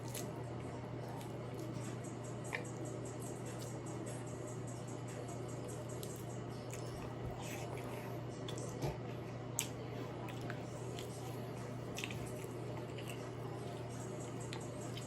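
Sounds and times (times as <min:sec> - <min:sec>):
wet squishing of food: 0:00.0 - 0:00.4, 0:05.9 - 0:15.0.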